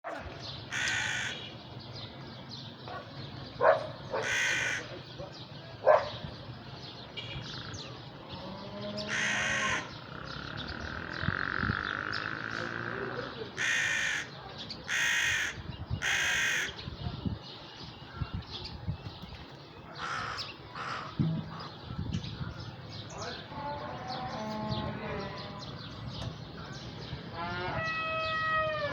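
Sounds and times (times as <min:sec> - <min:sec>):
crow cawing: 0:00.7 - 0:01.5, 0:04.2 - 0:04.9, 0:09.0 - 0:10.0, 0:13.6 - 0:16.8, 0:20.0 - 0:21.7.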